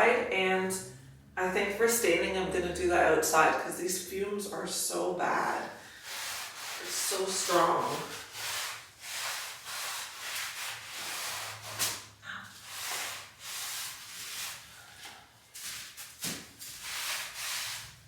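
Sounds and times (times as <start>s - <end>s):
cloth rubbing on wood: 5.9s - 18.0s.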